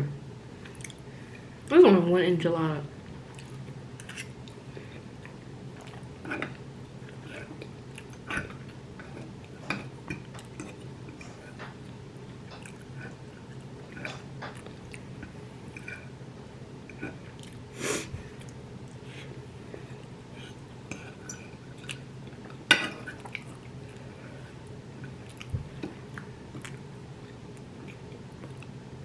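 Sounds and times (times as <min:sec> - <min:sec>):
steady low hum: 0:00.0 - 0:29.0
person chewing: 0:00.6 - 0:01.1, 0:03.3 - 0:16.1, 0:16.9 - 0:17.6, 0:18.2 - 0:24.2, 0:25.0 - 0:28.8.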